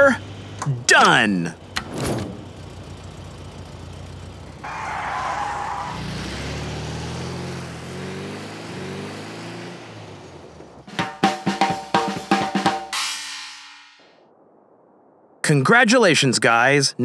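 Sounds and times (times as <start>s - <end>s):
low engine hum: 0.0s - 10.9s
engine revving: 1.6s - 11.2s
tyre screech: 4.6s - 6.1s.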